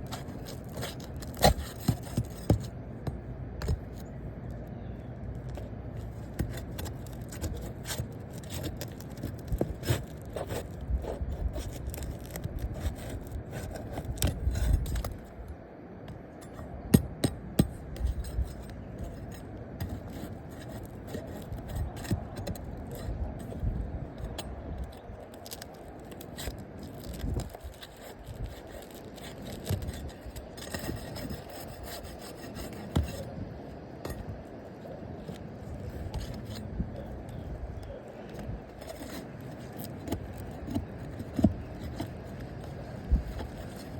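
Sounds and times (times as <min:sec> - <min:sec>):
roof shingles scraping: 0:00.0 - 0:02.8, 0:05.6 - 0:15.2, 0:25.0 - 0:43.9.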